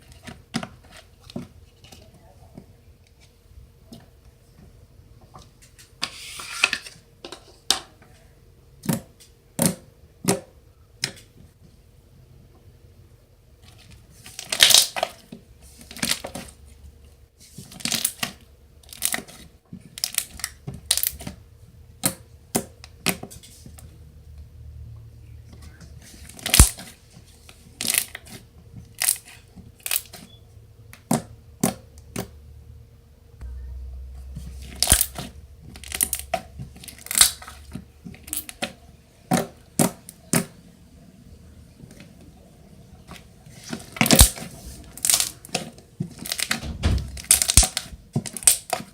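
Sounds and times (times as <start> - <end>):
slime popping and squelching: 33.9 - 38.7.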